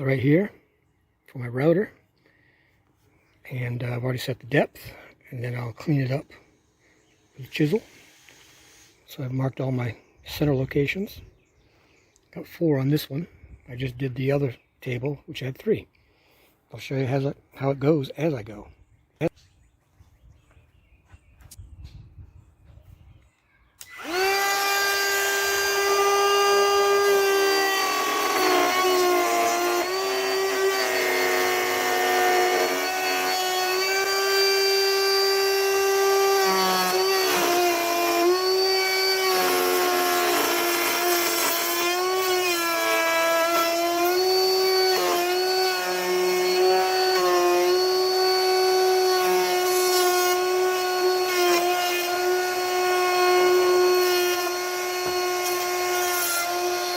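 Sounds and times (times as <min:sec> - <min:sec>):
wood router whining: 0:05.7 - 0:09.4, 0:23.8 - 0:56.9.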